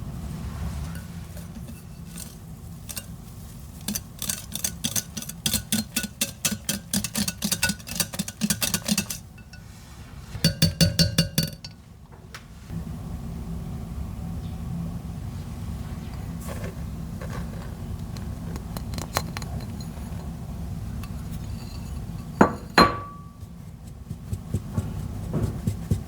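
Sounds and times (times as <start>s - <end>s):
utensil knocking against bowl: 3.8s - 9.6s, 10.4s - 11.8s.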